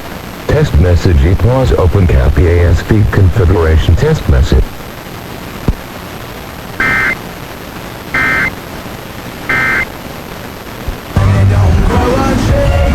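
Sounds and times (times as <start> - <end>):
radio hiss: 0.0 - 12.9
digital data tone bursts: 6.8 - 7.3, 8.1 - 8.6, 9.5 - 10.0.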